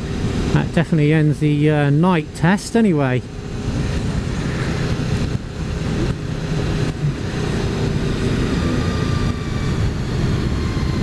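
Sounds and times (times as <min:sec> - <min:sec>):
wind buffeting microphone: 0:02.8 - 0:11.0
motorcycle engine running: 0:03.2 - 0:11.0.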